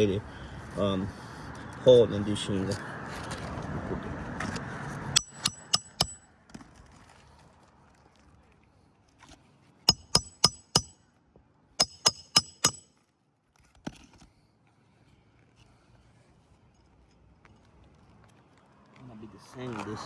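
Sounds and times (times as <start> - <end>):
hammer striking nails: 5.2 - 6.2, 9.9 - 11.0, 11.8 - 12.9.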